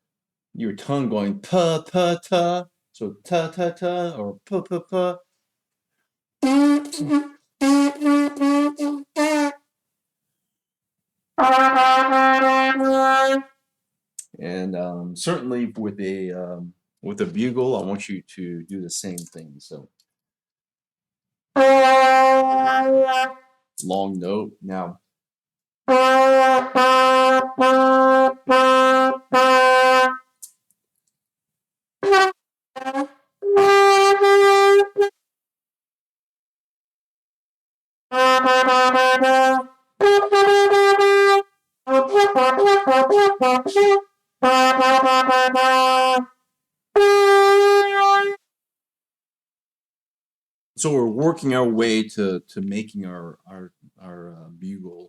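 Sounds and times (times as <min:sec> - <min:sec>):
brass horn playing tongued notes: 0:06.4 - 0:09.6, 0:11.4 - 0:13.6, 0:21.6 - 0:23.4, 0:25.9 - 0:30.3, 0:32.0 - 0:35.2, 0:38.1 - 0:46.3, 0:47.0 - 0:48.4.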